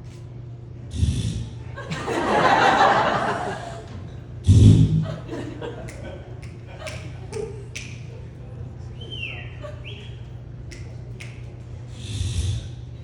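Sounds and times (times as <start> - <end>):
audience laughing: 1.6 - 10.4.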